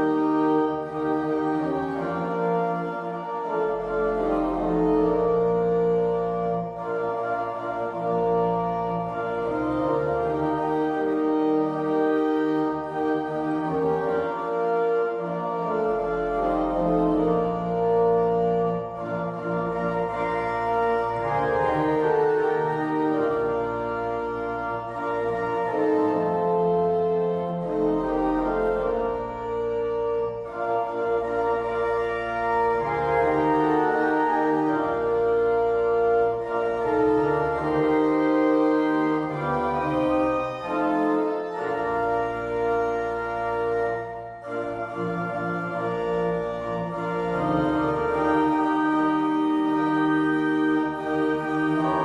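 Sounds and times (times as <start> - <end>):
organ chords: 0.0 - 52.0.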